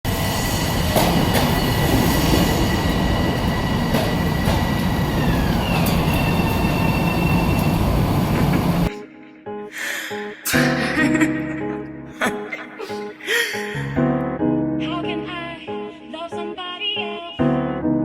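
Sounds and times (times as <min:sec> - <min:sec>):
subway train rumbling: 0:00.0 - 0:08.9
high whining tones: 0:00.1 - 0:08.9.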